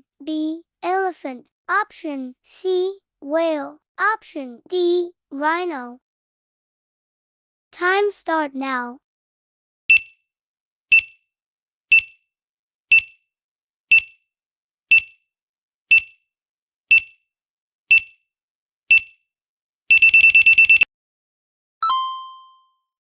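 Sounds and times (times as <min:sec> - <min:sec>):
high electronic timer beeps: 0:09.9 - 0:10.2, 0:10.9 - 0:11.2, 0:11.9 - 0:12.2, 0:12.9 - 0:13.2, 0:13.9 - 0:14.2, 0:14.9 - 0:15.2, 0:15.9 - 0:16.2, 0:16.9 - 0:17.2, 0:17.9 - 0:18.2, 0:18.9 - 0:19.2, 0:19.9 - 0:20.9.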